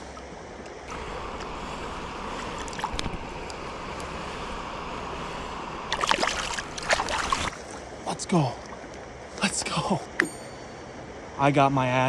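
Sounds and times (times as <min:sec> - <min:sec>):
river water rushing: 0:05.9 - 0:10.0.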